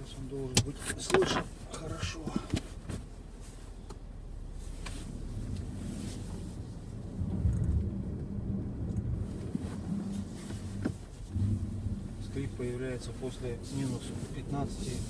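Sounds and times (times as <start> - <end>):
car driving rumble: 0.0 - 15.0.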